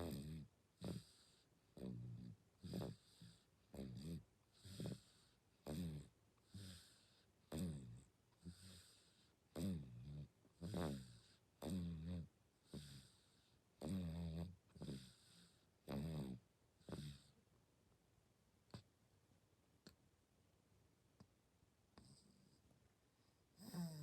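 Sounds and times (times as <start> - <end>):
baby snoring: 0.0 - 17.4, 23.6 - 24.0.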